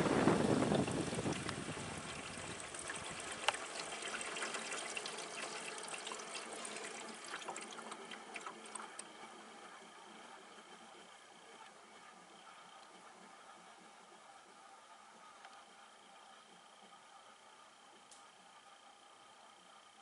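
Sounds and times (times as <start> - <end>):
water trickling: 0.0 - 9.1
air conditioner fan spinning down: 0.0 - 20.0.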